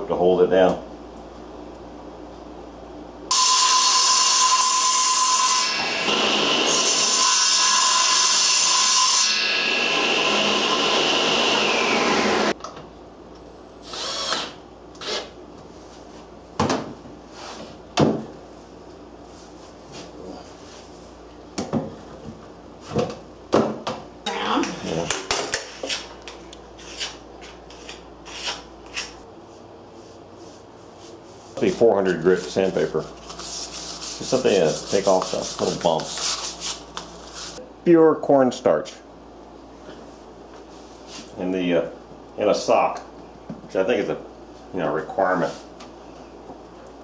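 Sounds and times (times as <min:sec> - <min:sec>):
power tool whining against wood: 0:07.4 - 0:12.5.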